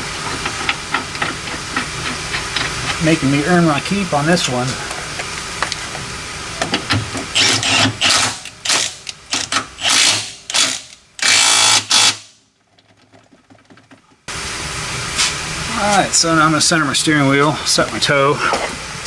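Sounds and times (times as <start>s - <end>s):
sharp clicks and knocks: 0.3s - 3.0s
power tool running: 7.2s - 9.1s, 9.8s - 12.3s.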